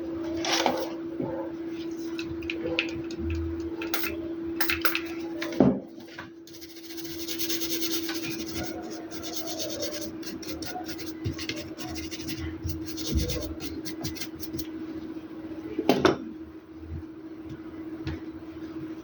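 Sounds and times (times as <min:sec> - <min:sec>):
steady hum: 0:00.0 - 0:19.0
rubbing and scraping: 0:06.5 - 0:14.6.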